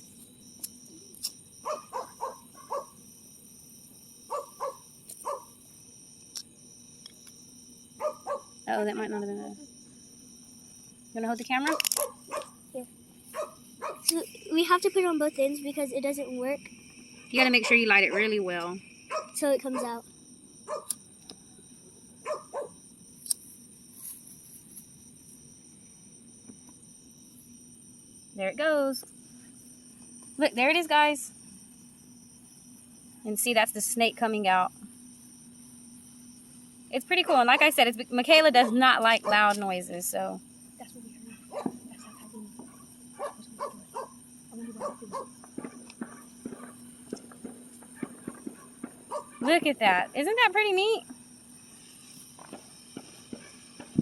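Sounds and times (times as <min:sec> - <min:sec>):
insects chirping: 0:00.0 - 0:54.0
dog barking: 0:01.6 - 0:03.0, 0:04.3 - 0:05.6, 0:08.0 - 0:08.6, 0:11.6 - 0:12.6, 0:13.3 - 0:14.1, 0:19.1 - 0:20.0, 0:20.7 - 0:20.9, 0:22.2 - 0:22.8, 0:38.6 - 0:39.4, 0:41.4 - 0:46.8, 0:48.0 - 0:49.6.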